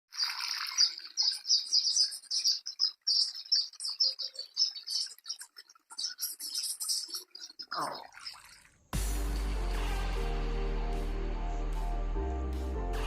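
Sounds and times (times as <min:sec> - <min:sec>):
small birds chirping: 0:00.1 - 0:08.6.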